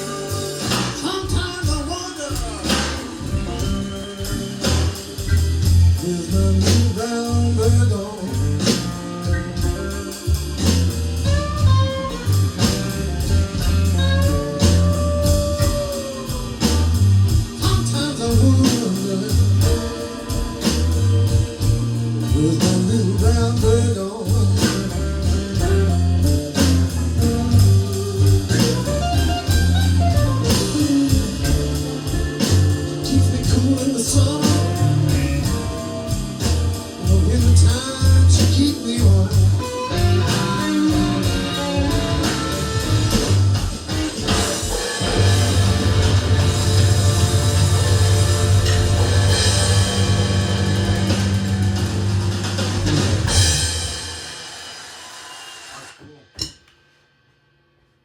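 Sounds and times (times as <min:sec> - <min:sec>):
bass: 0:00.0 - 0:54.4
steady drum beat: 0:00.0 - 0:56.6
electric guitar lead: 0:08.0 - 0:22.5, 0:25.0 - 0:38.0, 0:38.7 - 0:53.5.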